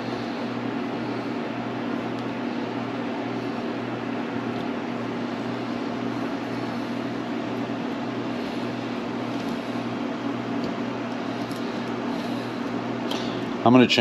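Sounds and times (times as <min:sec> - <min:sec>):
steady mechanical hum: 0:00.0 - 0:14.0.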